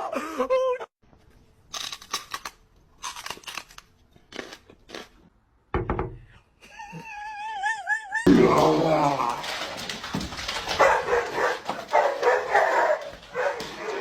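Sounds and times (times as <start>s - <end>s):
crunching and crinkling: 1.7s - 5.3s, 8.3s - 14.0s.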